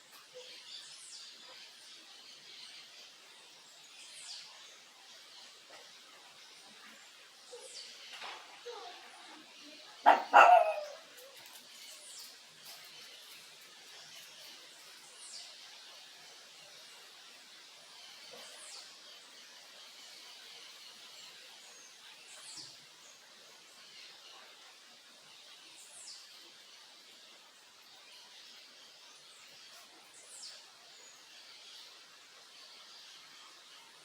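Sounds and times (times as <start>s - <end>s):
dog barking: 10.0s - 11.0s.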